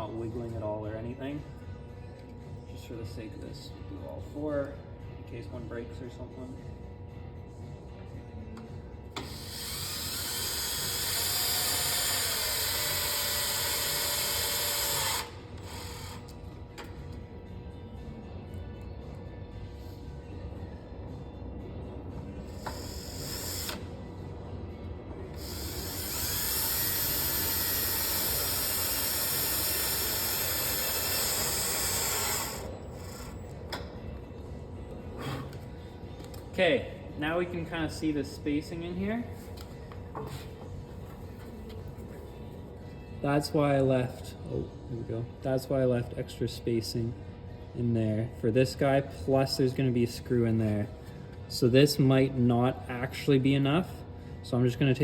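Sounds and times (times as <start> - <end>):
cordless drill driving screw: 9.2 - 16.4, 22.6 - 23.8, 25.4 - 33.4.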